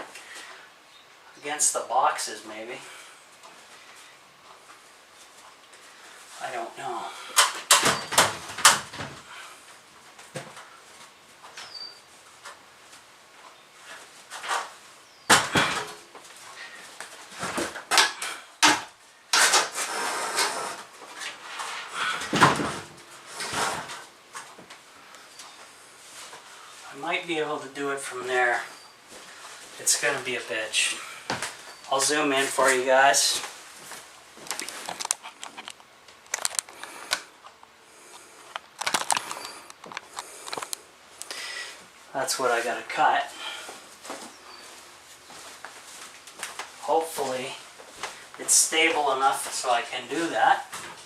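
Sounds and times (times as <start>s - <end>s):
objects knocking and scraping: 22.2s - 23.9s.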